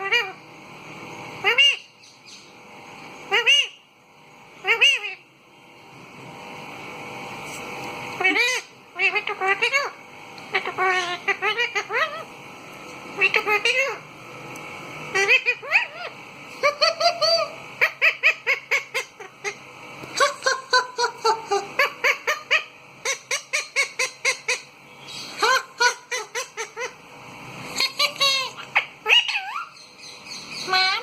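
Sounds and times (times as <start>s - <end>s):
parrot squawking: 0.0s - 0.4s, 1.4s - 2.5s, 3.3s - 3.8s, 4.6s - 5.2s, 8.2s - 12.3s, 13.2s - 14.0s, 15.1s - 27.0s, 27.7s - 31.0s.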